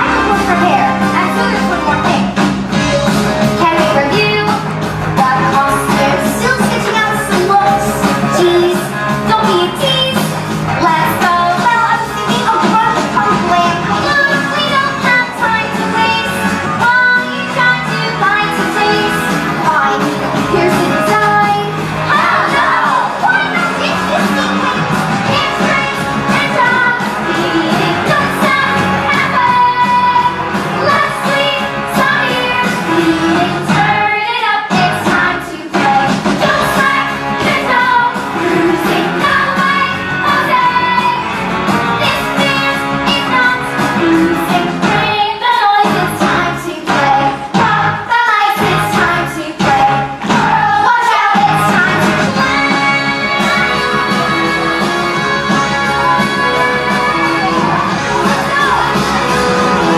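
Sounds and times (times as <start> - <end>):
band with drums: 0.0 - 59.9
person singing: 42.0 - 59.9.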